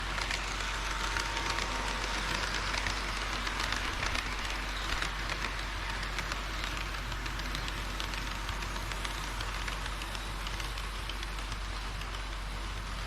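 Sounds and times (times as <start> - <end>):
model train running on track: 0.0 - 13.0
wheels clicking over rail joints: 0.0 - 13.0.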